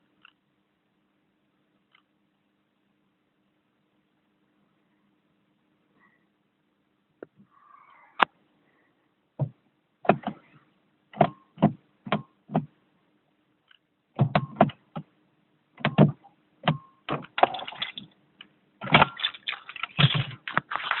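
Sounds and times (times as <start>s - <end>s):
faint steady hum: 0.0s - 21.0s
irregular short clicks and knocks: 11.1s - 12.8s, 13.6s - 15.1s, 15.8s - 20.4s.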